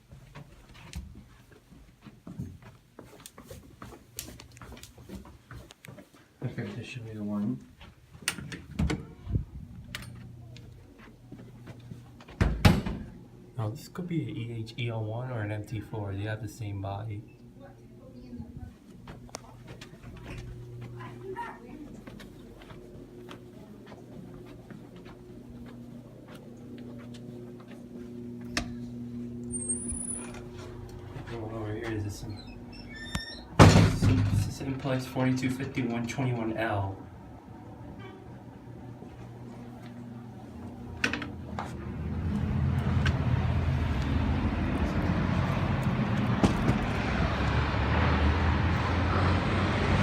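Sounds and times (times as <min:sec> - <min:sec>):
footsteps on hard floor: 0:00.1 - 0:06.3, 0:18.9 - 0:21.2, 0:21.8 - 0:28.5
low building hum: 0:13.0 - 0:50.0
brief high-pitched tone: 0:29.5 - 0:30.4
road traffic rumble and hiss: 0:36.6 - 0:50.0.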